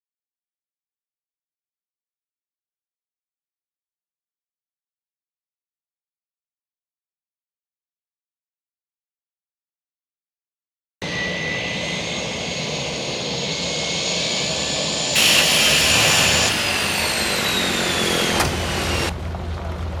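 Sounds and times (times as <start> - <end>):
aircraft engine droning: 11.0 - 20.0.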